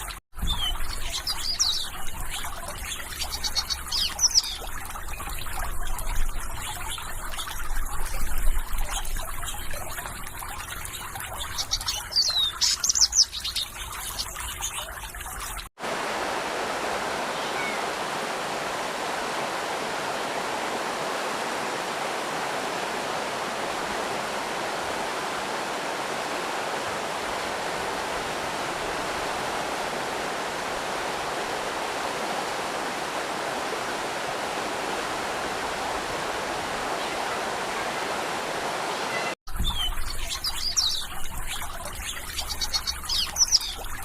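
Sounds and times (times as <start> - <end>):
flowing water rushing: 0.0 - 44.0.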